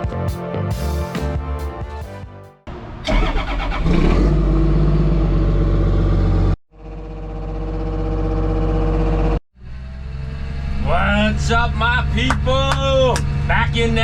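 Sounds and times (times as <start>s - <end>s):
diesel engine cranking and running: 2.8s - 13.9s.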